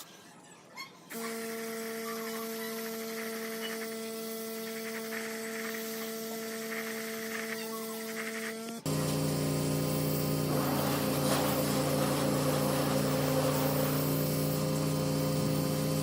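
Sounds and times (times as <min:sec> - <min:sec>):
small electric motor humming: 0:01.1 - 0:16.0.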